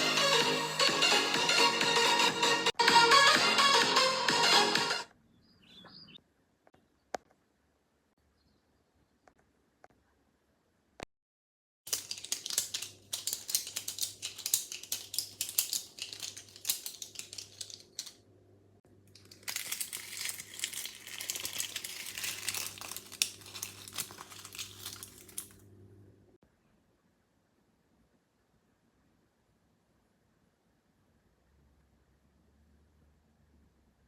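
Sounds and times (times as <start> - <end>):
crumpled material crackling: 11.9 - 18.1, 19.1 - 25.6.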